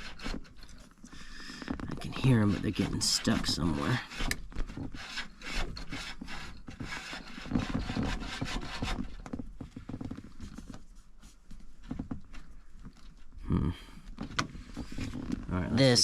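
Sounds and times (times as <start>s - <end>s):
cables scraping through tubes: 0.0s - 9.2s.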